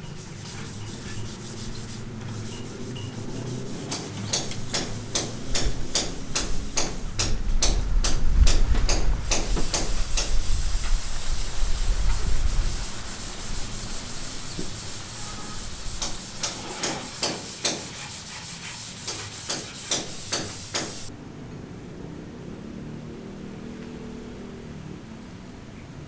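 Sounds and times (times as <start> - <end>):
scraping strokes on hard surface: 0.0 - 7.0, 9.2 - 21.1.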